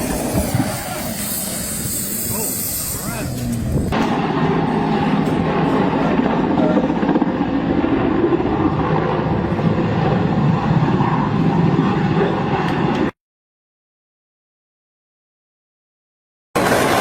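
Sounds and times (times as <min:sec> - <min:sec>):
helicopter rotor and engine: 0:00.0 - 0:13.2, 0:16.6 - 0:17.0.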